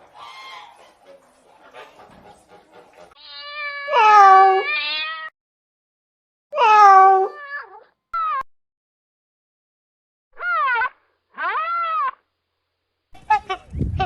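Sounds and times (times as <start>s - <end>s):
cat meowing: 3.2s - 5.3s, 6.6s - 8.4s.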